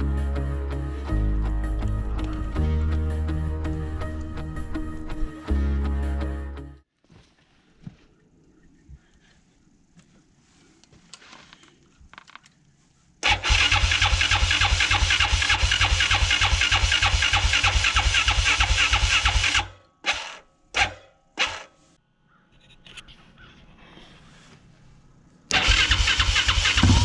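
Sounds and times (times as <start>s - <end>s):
engine starting and pulsing: 13.2s - 21.7s, 25.5s - 27.0s.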